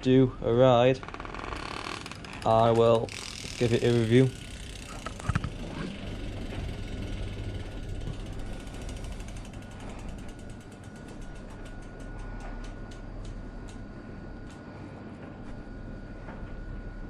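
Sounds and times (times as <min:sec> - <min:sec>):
bicycle hub ratcheting clicks: 0:01.0 - 0:05.6.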